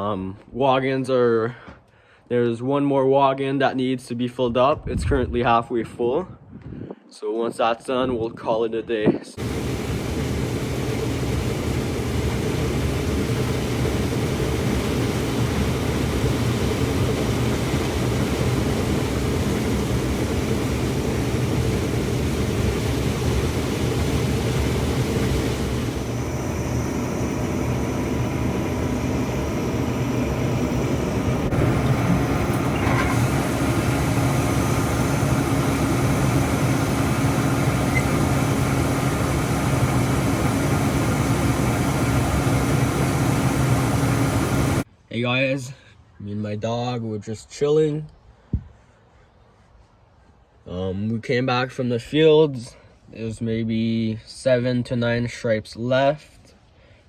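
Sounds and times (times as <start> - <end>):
diesel engine droning: 9.4 - 44.8.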